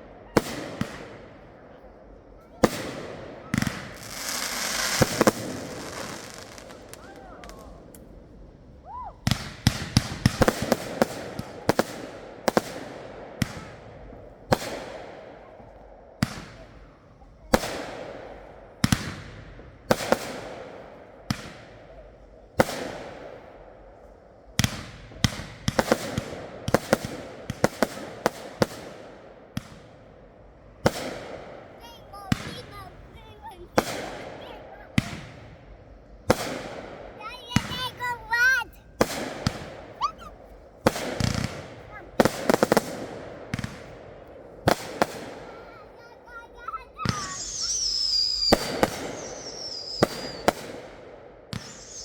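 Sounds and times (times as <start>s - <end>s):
fireworks bangs: 0.0s - 30.1s, 30.7s - 52.0s
fireworks hissing: 2.8s - 8.2s, 31.8s - 44.0s, 44.6s - 50.6s, 51.6s - 52.0s.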